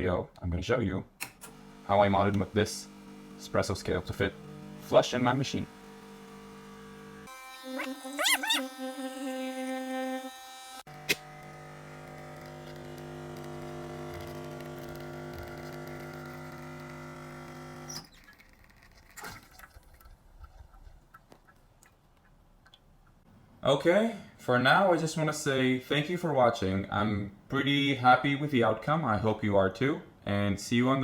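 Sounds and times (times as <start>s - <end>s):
machine humming: 1.4s - 18.0s.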